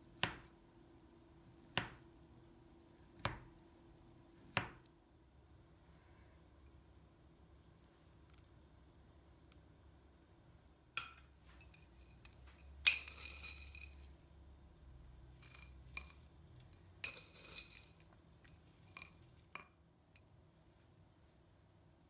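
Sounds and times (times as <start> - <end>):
tableware rattling: 11.0 - 14.2, 15.3 - 19.6.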